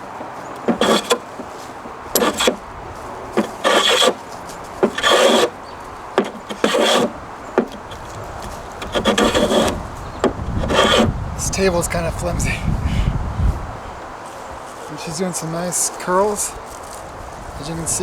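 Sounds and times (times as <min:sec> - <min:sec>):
hand plane scraping wood: 0:00.0 - 0:11.6.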